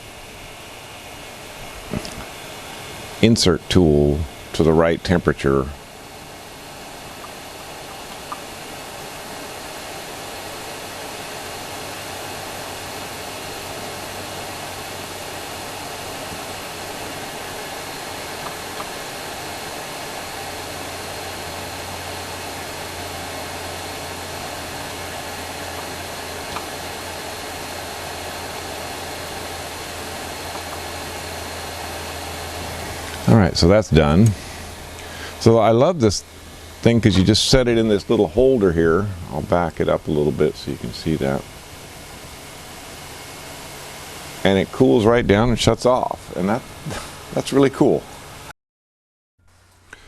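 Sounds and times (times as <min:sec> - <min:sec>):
low hum: 0:00.0 - 0:48.5
hot air gun blowing hiss: 0:05.8 - 0:33.4, 0:34.0 - 0:44.6, 0:46.3 - 0:47.6.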